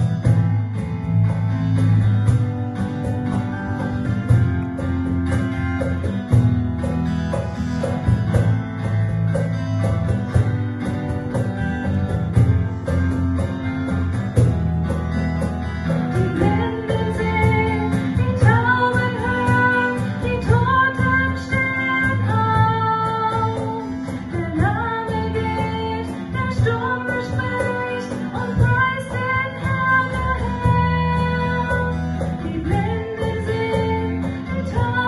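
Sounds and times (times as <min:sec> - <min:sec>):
guitar accompaniment: 0:00.0 - 0:35.0
woman singing: 0:16.0 - 0:35.0.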